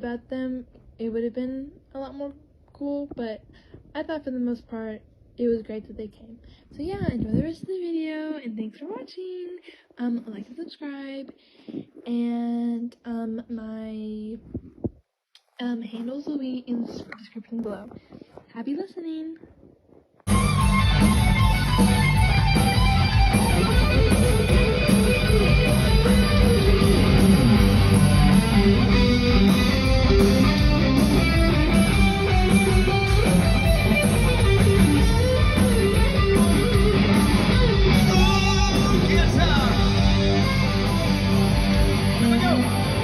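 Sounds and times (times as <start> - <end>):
electric guitar: 20.3 - 43.0
live rock band playing: 20.3 - 43.0.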